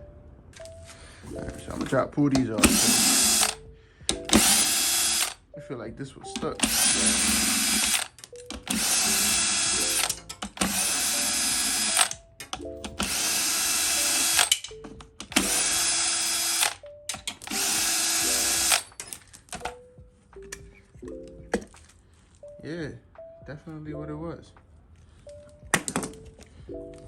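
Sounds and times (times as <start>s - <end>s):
cordless power tool bursts: 2.6s - 3.6s, 4.2s - 5.4s, 6.5s - 12.2s, 12.9s - 14.7s, 15.3s - 19.7s.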